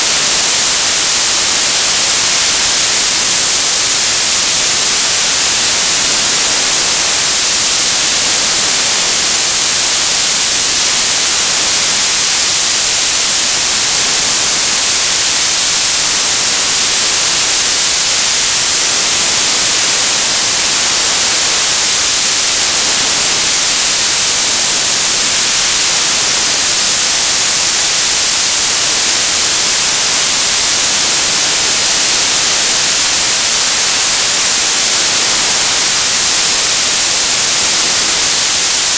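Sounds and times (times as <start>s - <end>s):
television static hiss: 0.0s - 38.9s.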